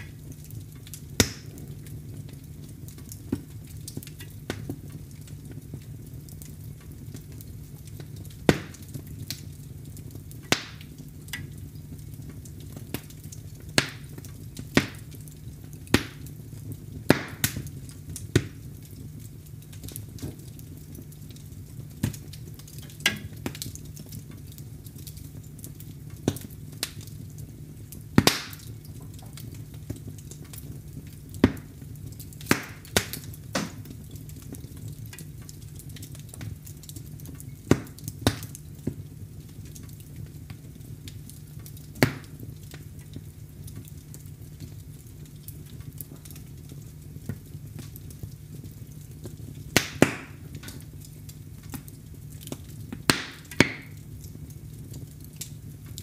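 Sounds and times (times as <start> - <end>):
wood fire popping and snapping: 0.0 - 56.0.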